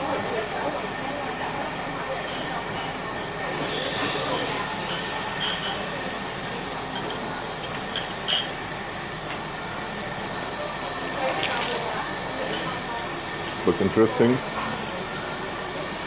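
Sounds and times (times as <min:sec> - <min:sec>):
utensils clinking against dishes: 0:02.2 - 0:09.4, 0:11.2 - 0:13.0.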